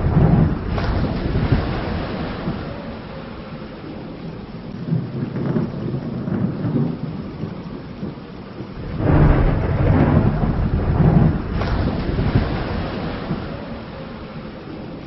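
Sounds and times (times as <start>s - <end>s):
steady rain: 0.0s - 15.0s
thunder rolling: 0.0s - 15.0s.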